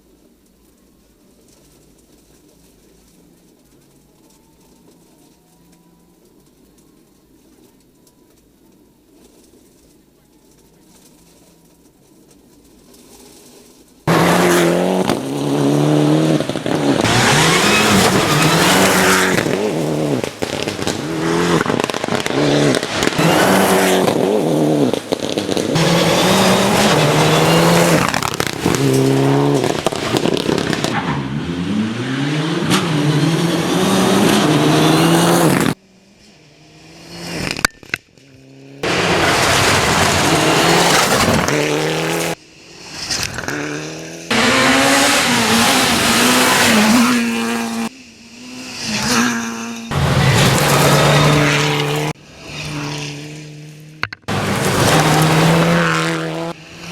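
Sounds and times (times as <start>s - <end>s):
tyres on loose gravel: 0.0s - 31.4s, 33.8s - 56.9s
rally car engines revving hard: 14.1s - 35.8s, 36.4s - 56.9s.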